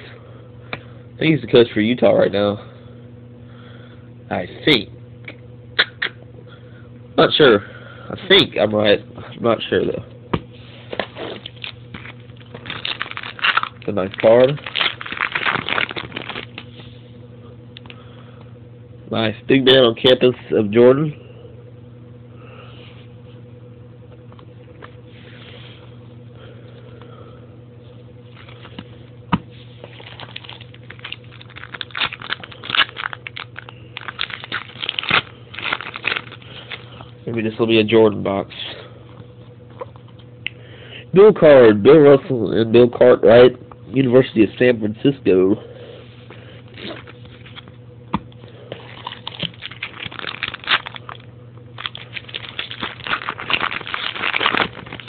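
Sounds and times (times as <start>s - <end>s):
cards rustling and flicking: 10.9s - 16.9s, 29.8s - 36.9s, 48.7s - 51.2s, 51.8s - 55.0s
foil wrapper tearing and crinkling: 11.1s - 16.7s, 29.8s - 36.9s, 48.8s - 55.0s.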